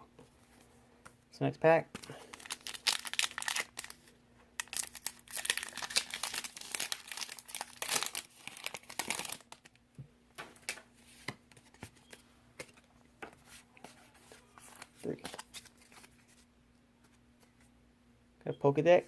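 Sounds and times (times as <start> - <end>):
foil wrapper crinkling and tearing: 2.0 - 9.8.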